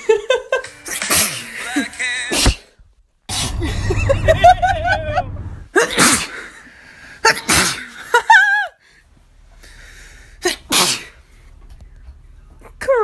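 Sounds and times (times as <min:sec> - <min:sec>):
person sneezing: 0:10.4 - 0:11.2.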